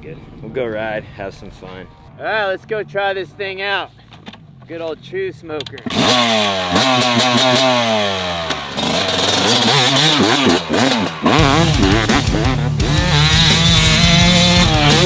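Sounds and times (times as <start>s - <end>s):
motocross bike engine revving: 4.4s - 15.0s.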